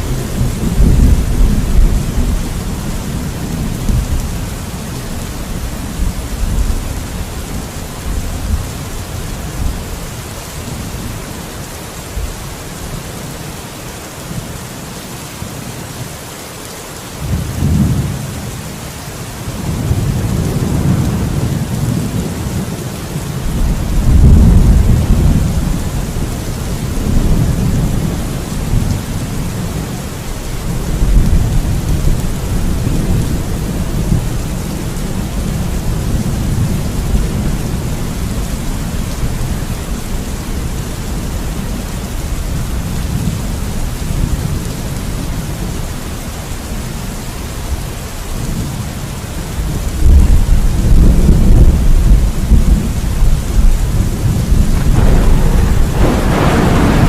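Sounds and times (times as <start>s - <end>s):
rolling thunder: 0.0s - 7.2s, 23.4s - 45.8s, 49.6s - 57.0s
steady rain hiss: 0.0s - 57.0s.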